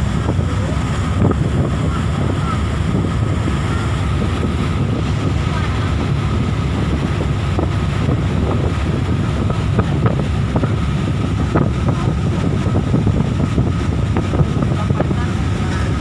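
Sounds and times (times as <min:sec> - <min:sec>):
boat engine rumble: 0:00.0 - 0:16.0
wind buffeting microphone: 0:00.0 - 0:16.0.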